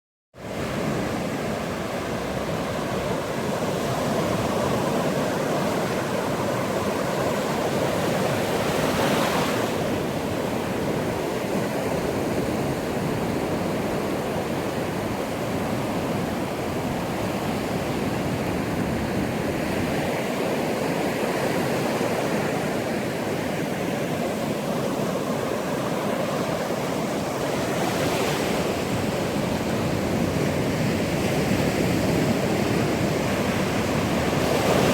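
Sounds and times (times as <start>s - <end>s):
waves rushing on a beach: 0.4s - 34.9s.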